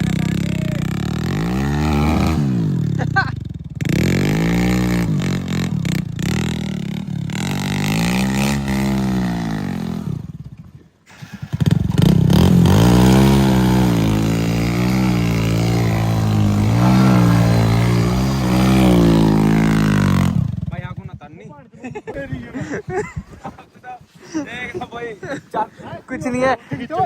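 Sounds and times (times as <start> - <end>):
diesel engine revving: 0.0 - 10.4, 11.1 - 20.7.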